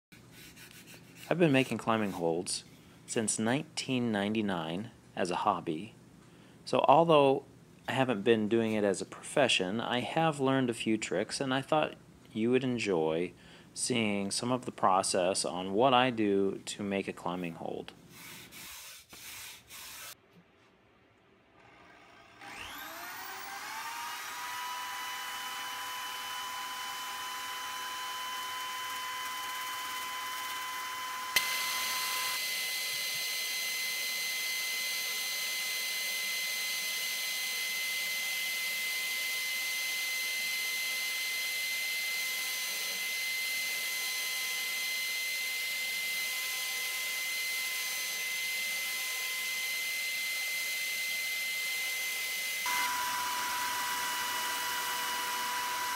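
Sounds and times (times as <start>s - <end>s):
power tool motor whine: 21.6s - 55.9s.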